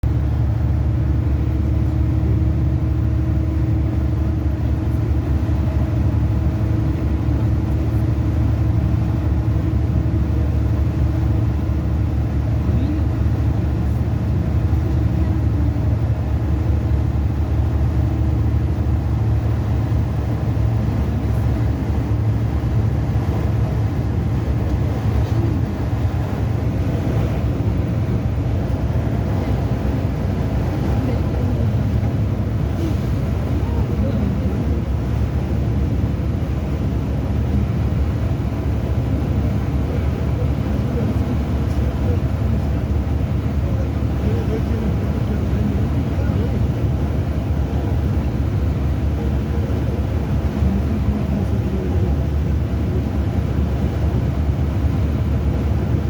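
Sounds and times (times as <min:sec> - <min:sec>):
engine running: 0:00.0 - 0:56.0.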